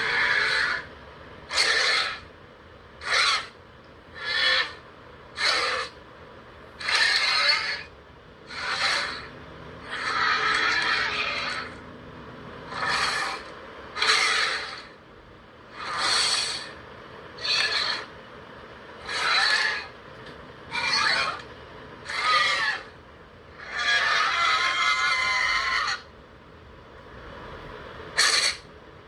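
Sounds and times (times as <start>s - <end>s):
monster roars: 6.8s - 7.9s, 8.5s - 11.8s, 12.7s - 14.9s, 15.8s - 16.7s, 22.1s - 22.9s.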